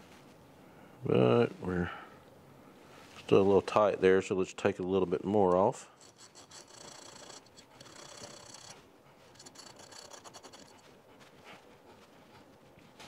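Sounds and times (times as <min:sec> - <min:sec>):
hand file scraping metal: 0:05.9 - 0:10.9.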